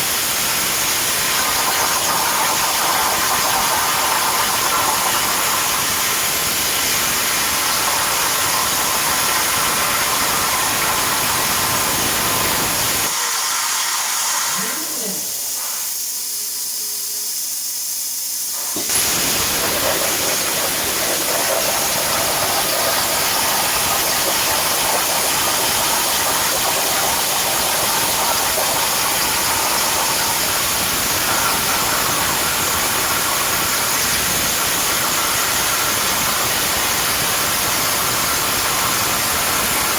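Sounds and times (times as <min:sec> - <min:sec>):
plasma torch cutting steel: 0:00.0 - 0:39.9
thin high hiss: 0:12.8 - 0:19.5.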